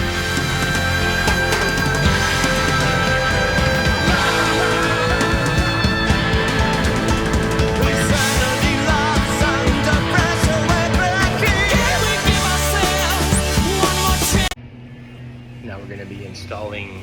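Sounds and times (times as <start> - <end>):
rock music with singing: 0.0 - 14.6.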